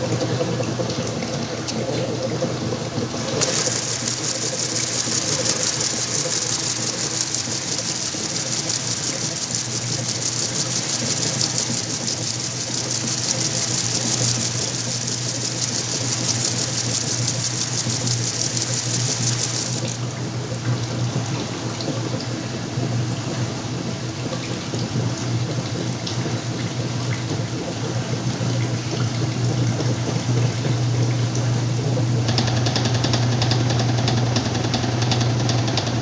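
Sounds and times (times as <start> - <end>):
constant high hiss: 3.2 - 20.0
washing machine motor hum: 3.2 - 20.3.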